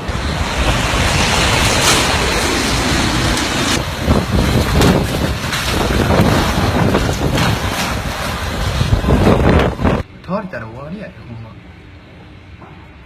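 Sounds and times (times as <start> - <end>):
strong wind buffeting microphone: 0.0 - 10.1.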